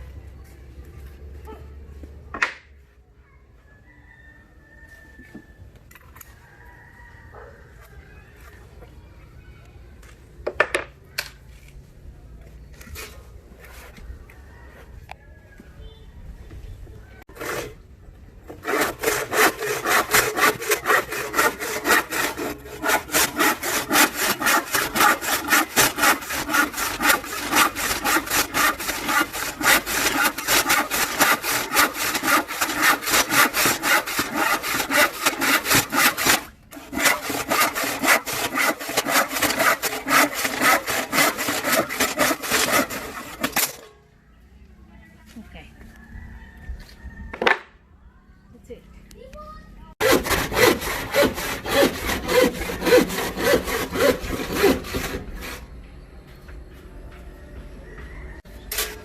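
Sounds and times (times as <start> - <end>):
handsaw cutting wood: 17.3 - 17.8, 18.5 - 43.8, 50.0 - 55.6.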